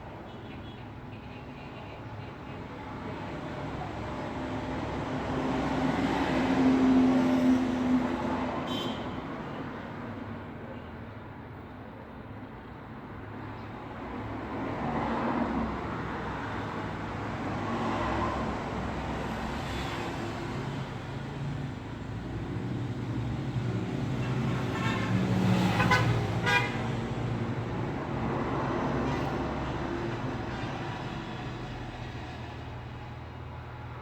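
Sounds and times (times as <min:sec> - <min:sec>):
vehicle horn toot: 0:08.7 - 0:09.2, 0:25.8 - 0:26.9
cars passing: 0:14.0 - 0:34.0.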